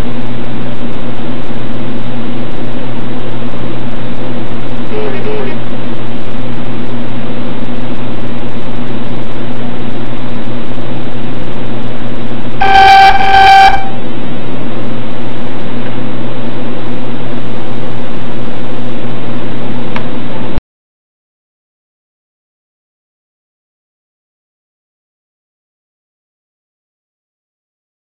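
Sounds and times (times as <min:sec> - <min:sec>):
hard drive hiss and hum: 0:00.0 - 0:20.6
short pitched beeps: 0:12.6 - 0:14.0.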